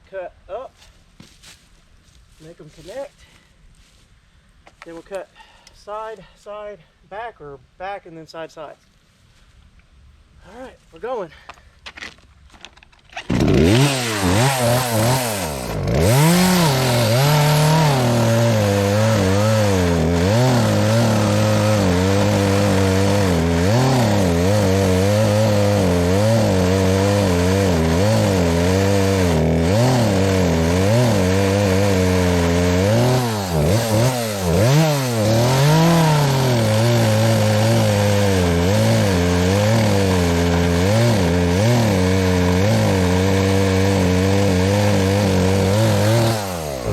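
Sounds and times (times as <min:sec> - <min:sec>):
chainsaw cutting wood: 0:11.9 - 0:46.9.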